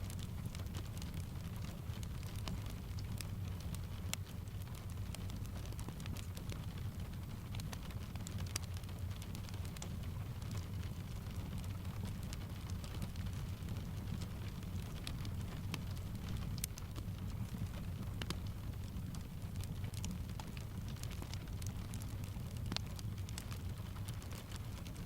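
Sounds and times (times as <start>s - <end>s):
rain tapping on a window: 0.0s - 25.0s
fireplace crackling: 0.1s - 25.0s.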